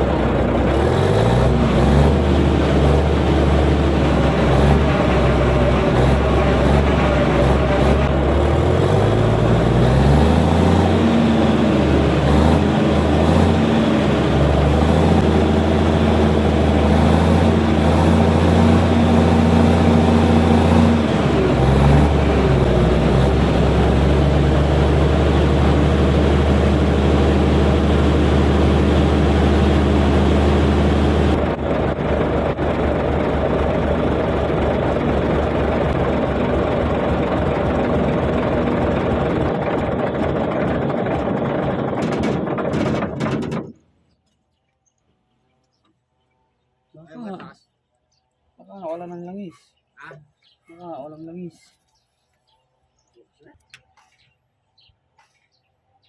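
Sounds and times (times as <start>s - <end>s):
bulldozer diesel engine running: 0.0s - 44.2s.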